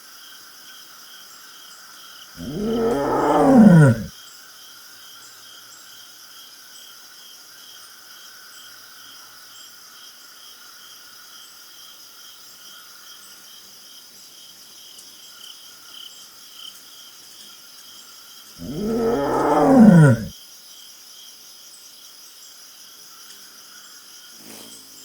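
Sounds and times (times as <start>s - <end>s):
cheetah yawning moan: 2.4s - 4.1s, 18.6s - 20.3s.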